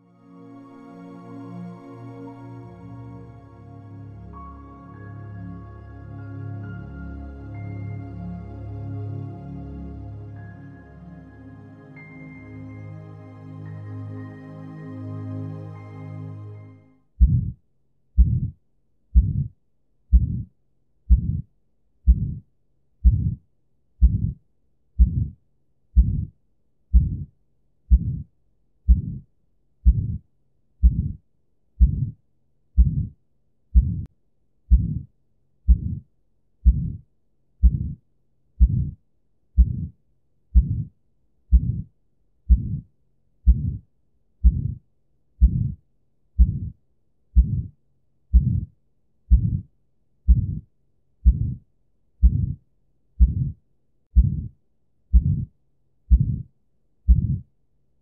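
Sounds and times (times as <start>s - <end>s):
heartbeat thumps: 17.2s - 17.6s, 18.2s - 18.6s, 19.2s - 19.5s, 20.1s - 20.5s, 21.1s - 21.5s, 22.1s - 22.4s, 23.0s - 23.4s, 24.0s - 24.4s, 25.0s - 25.4s, 26.0s - 26.3s, 26.9s - 27.3s, 27.9s - 28.3s, 28.9s - 29.2s, 29.8s - 30.2s, 30.8s - 31.2s, 31.8s - 32.2s, 32.8s - 33.2s, 33.8s - 34.1s, 34.7s - 35.1s, 35.7s - 36.0s, 36.6s - 37.0s, 37.6s - 38.0s, 38.6s - 39.0s, 39.6s - 40.0s, 40.6s - 40.9s, 41.5s - 41.9s, 42.5s - 42.9s, 43.5s - 43.8s, 44.4s - 44.8s, 45.4s - 45.8s, 46.4s - 46.8s, 47.4s - 47.7s, 48.3s - 48.7s, 49.3s - 49.7s, 50.3s - 51.6s, 52.2s - 52.6s, 53.2s - 53.6s, 54.2s - 55.5s, 56.1s - 56.5s, 57.1s - 57.4s.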